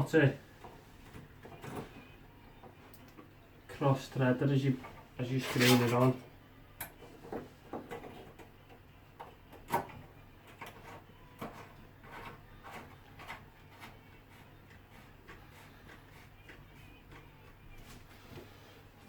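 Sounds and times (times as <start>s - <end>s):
light rubbing: 4.7s - 6.2s.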